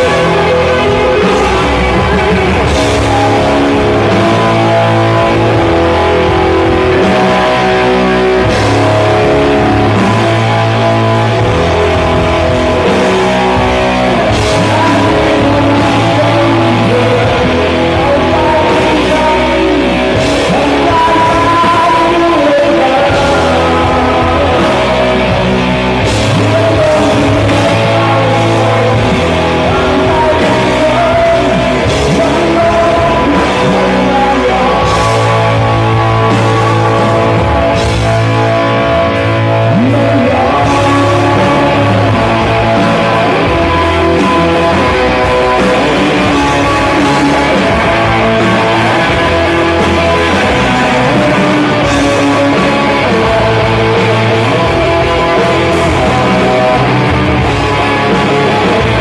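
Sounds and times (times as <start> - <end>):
bass: 0.0 - 59.0
drums: 0.0 - 59.0
electric guitars: 0.0 - 59.0
rock band playing live: 0.0 - 59.0.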